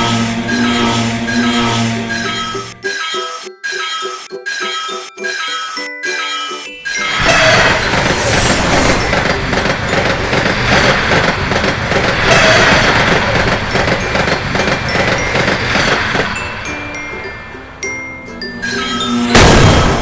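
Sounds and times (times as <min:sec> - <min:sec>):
wheels clattering over rail joints: 0:07.0 - 0:17.8
train wheels rumbling: 0:07.1 - 0:17.4.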